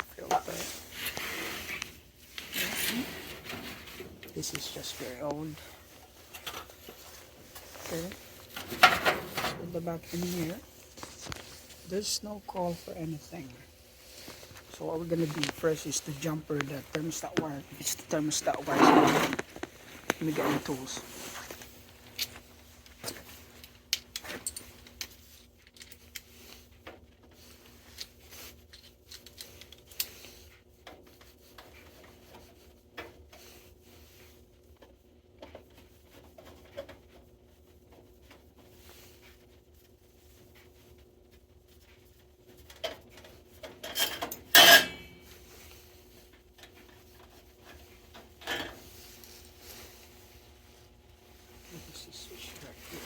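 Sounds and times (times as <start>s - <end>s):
metal tools clinking: 43.8s - 45.2s.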